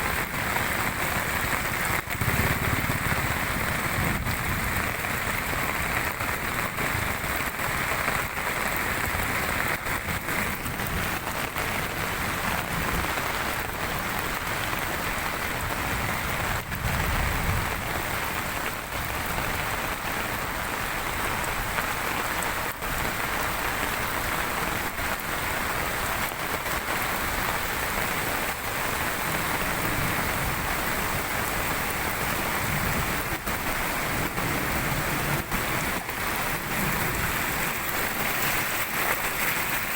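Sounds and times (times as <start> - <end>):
heavy rain: 0.0 - 39.9
waterfall rushing: 34.9 - 39.9.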